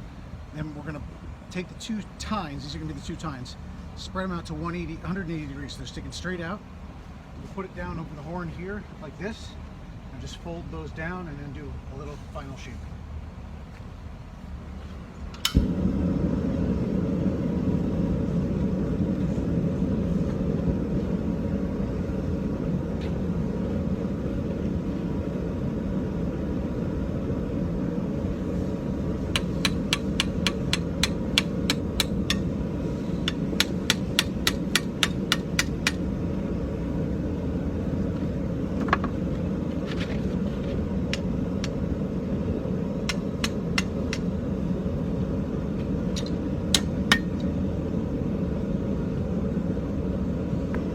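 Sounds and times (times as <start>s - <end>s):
steady low rumble: 0.0s - 50.9s
hammer striking iron on anvil: 29.3s - 32.5s, 33.2s - 36.0s, 43.0s - 44.3s, 46.2s - 47.5s.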